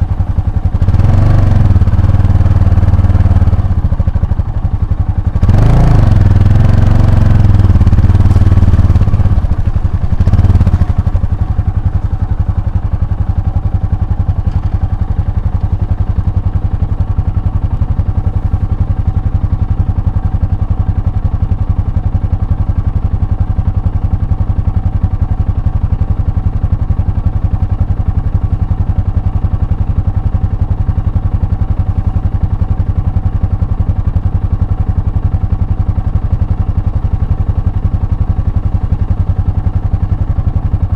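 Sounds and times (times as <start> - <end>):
motorcycle engine revving: 0.0 - 17.4.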